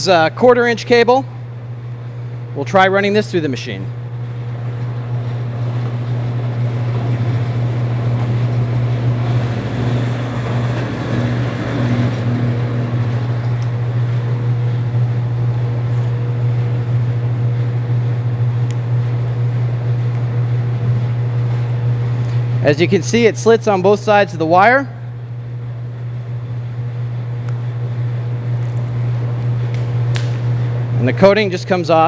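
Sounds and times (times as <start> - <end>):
wire stripping machine humming: 0.0 - 32.0
cable being stripped by blades: 28.5 - 30.5.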